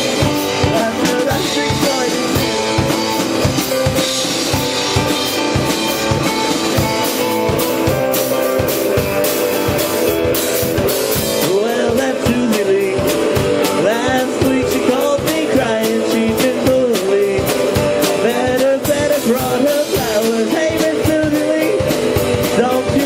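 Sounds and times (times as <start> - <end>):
drum kit beat: 0.0 - 23.0
guitar: 0.0 - 23.0
rock and roll band playing: 0.0 - 23.0.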